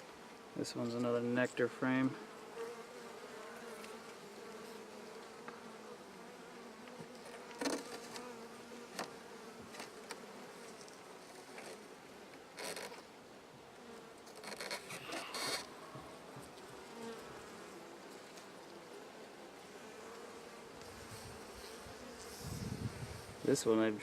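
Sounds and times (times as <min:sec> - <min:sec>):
honeybees buzzing: 0:02.0 - 0:13.1, 0:13.8 - 0:24.0
brief scrapes: 0:14.5 - 0:15.7.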